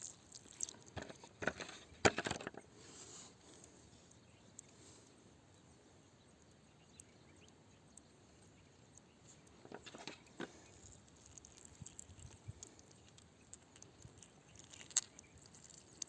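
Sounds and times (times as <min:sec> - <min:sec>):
faint clicks: 0:03.5 - 0:05.6.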